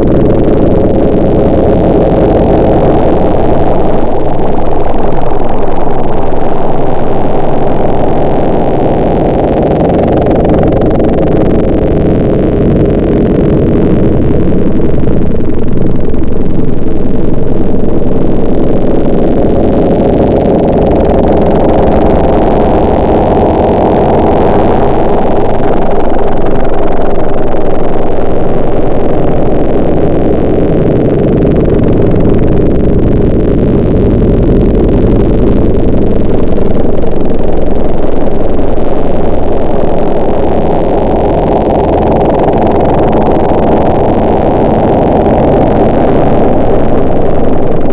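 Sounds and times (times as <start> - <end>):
engine running loudly: 0.0 - 47.9
motor droning: 0.0 - 47.9.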